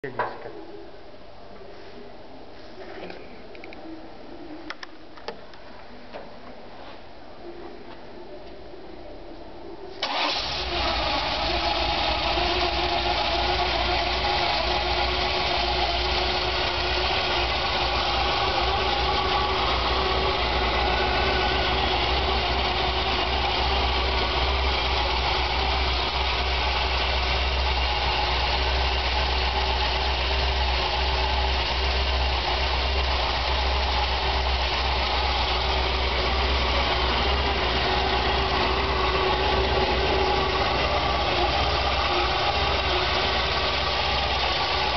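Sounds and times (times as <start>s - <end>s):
car engine idling roughly: 10.0s - 44.9s.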